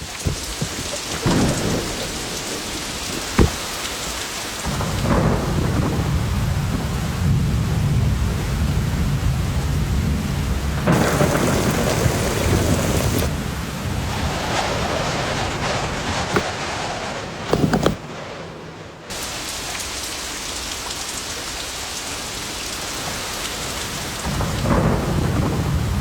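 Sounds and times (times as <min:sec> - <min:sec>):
deep thunder rumbling: 0:00.0 - 0:17.4, 0:24.2 - 0:26.0
heavy rain pouring: 0:00.0 - 0:26.0.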